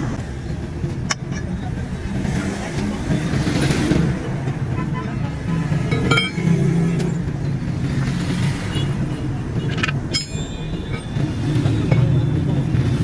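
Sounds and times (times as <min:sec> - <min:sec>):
metallic clinks: 0:05.8 - 0:06.7, 0:09.6 - 0:12.4.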